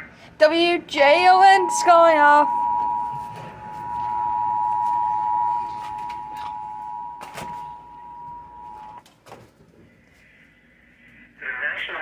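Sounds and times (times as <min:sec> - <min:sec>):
two-tone alarm: 0:01.0 - 0:09.0.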